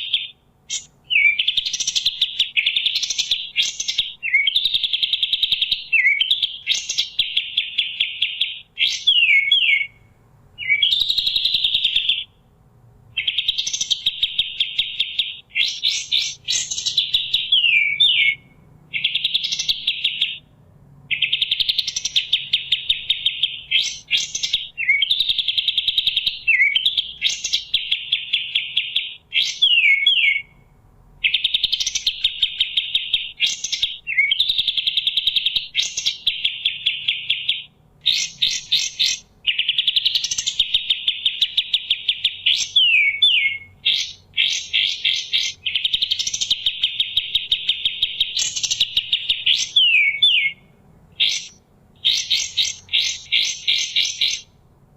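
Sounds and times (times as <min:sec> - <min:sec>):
bird singing fast trills: 0:00.0 - 0:54.9
bird whistled sweeping notes: 0:42.2 - 0:50.6.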